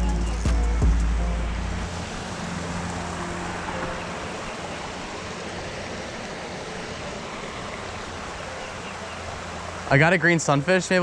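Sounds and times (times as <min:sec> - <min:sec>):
creek water rushing: 0:00.0 - 0:11.0
low vehicle hum: 0:00.0 - 0:11.0.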